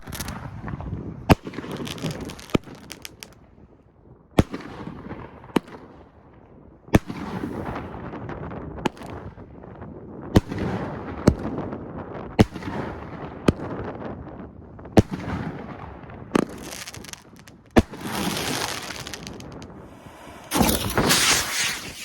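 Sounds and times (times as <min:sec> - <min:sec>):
firework hissing and crackling: 0:00.0 - 0:00.3, 0:01.7 - 0:03.3, 0:16.4 - 0:22.0
firework reports: 0:16.4 - 0:22.0.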